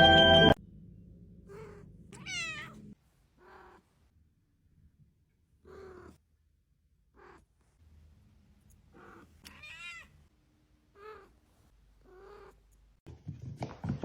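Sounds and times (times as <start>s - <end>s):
cat meowing: 1.5s - 2.8s, 9.0s - 10.1s.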